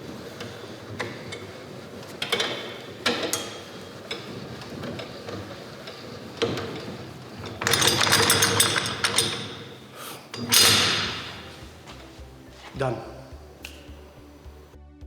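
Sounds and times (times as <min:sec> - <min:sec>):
spring compressor metal knocks: 0:00.2 - 0:12.2.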